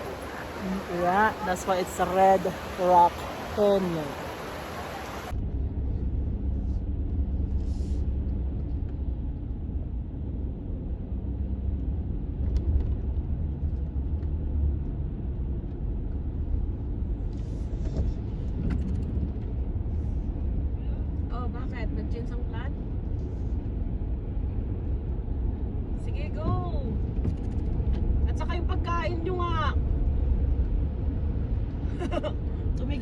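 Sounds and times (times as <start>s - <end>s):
low rumble of car driving: 0.0s - 33.0s.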